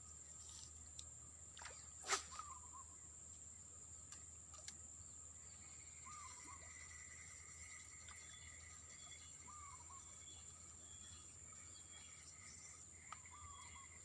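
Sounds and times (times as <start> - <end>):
steady high-pitched hum: 0.0 - 14.0
faint warbling calls: 1.6 - 3.1, 5.5 - 14.0.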